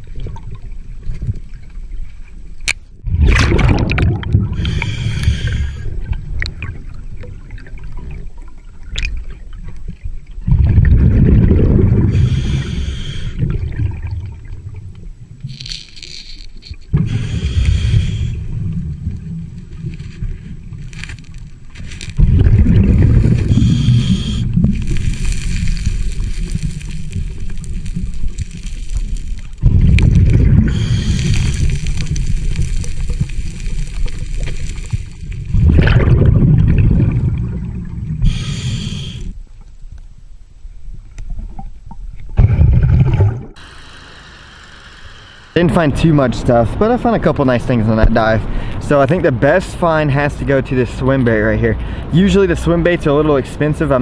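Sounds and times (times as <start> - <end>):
exhaled bubbles rumbling: 3.0 - 15.7, 16.6 - 39.4, 41.2 - 43.6
regulator air hiss: 4.6 - 5.9, 12.1 - 13.4, 17.0 - 18.5, 23.4 - 26.2, 30.6 - 33.5, 38.2 - 39.4.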